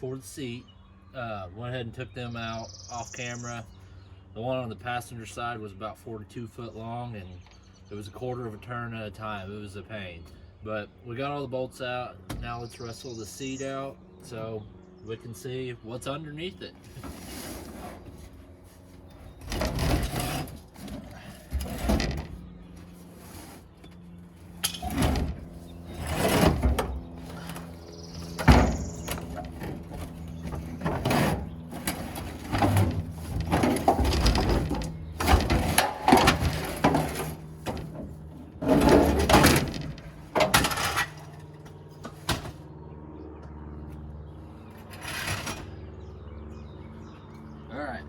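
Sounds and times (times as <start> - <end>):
seat clunking and scraping: 16.9 - 41.1.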